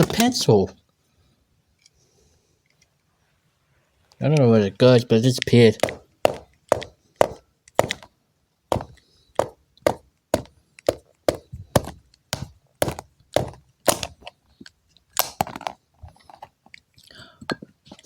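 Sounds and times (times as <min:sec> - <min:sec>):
hard object knocking on surface: 0:05.8 - 0:08.1, 0:08.7 - 0:14.2.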